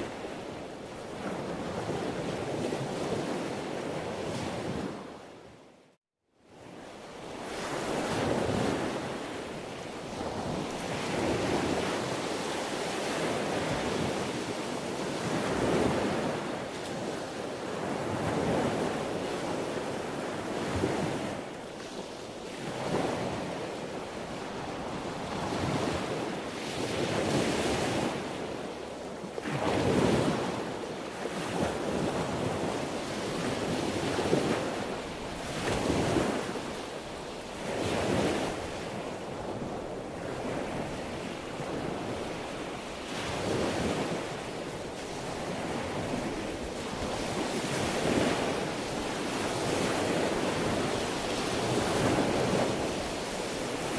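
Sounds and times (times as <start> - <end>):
ocean waves breaking on shore: 0.0 - 5.7, 6.5 - 53.9
wind noise: 29.4 - 53.9.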